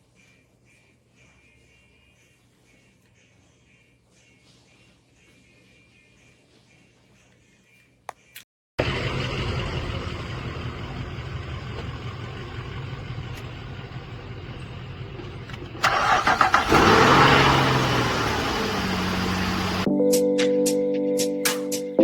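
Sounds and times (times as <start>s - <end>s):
car engine cranking and starting: 8.8s - 19.9s.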